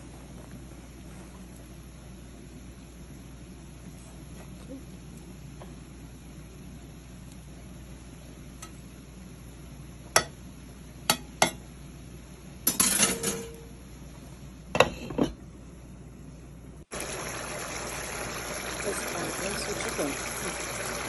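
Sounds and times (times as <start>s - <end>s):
dishes and utensils clinking: 12.7s - 13.7s.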